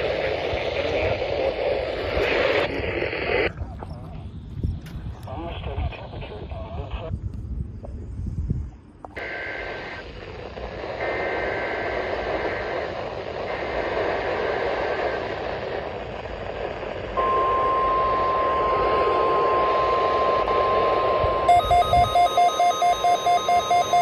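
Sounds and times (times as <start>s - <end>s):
radio static: 0.0s - 7.2s, 9.1s - 24.0s
digital header tone bursts: 17.2s - 24.0s
pulsing electronic beeping: 17.2s - 24.0s
steady warning alarm tone: 17.2s - 24.0s.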